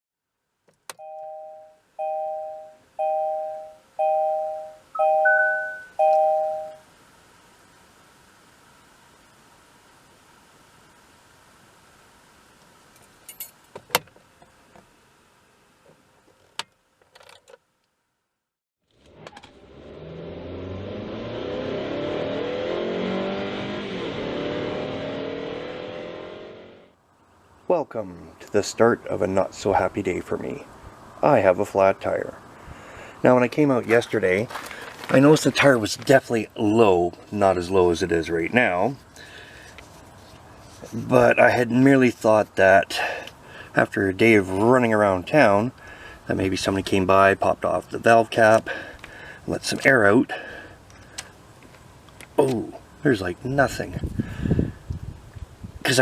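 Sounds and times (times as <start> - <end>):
electronic two-note chime: 1.0 - 6.8
car engine revving: 19.1 - 27.0.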